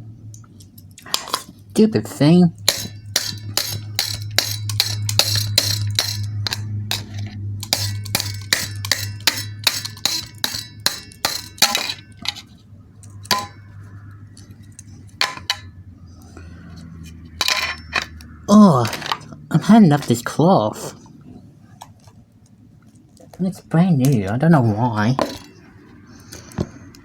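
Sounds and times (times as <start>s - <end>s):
steady low hum: 0.0s - 27.0s
small hard objects clinking: 2.6s - 13.9s, 17.4s - 19.4s.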